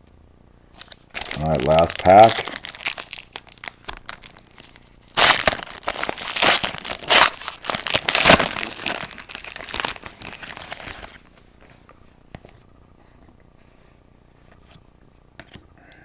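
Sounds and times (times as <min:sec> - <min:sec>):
foil wrapper tearing and crinkling: 0:00.8 - 0:11.3.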